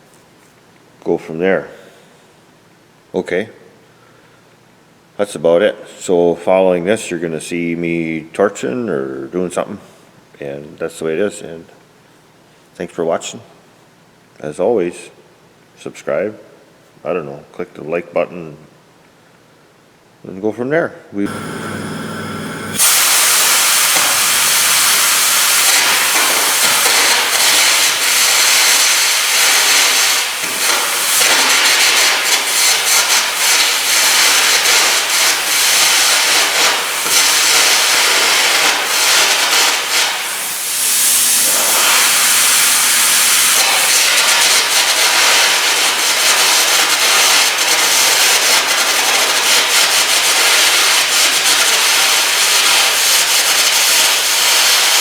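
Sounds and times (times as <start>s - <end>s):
loud air and arc hiss: 21.3s - 47.6s.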